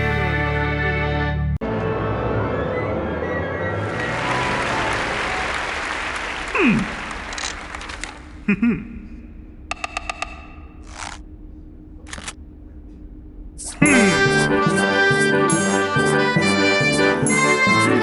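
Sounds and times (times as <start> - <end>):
music: 0.0 - 5.8, 13.6 - 18.0
noisy wash like applause: 3.7 - 8.3.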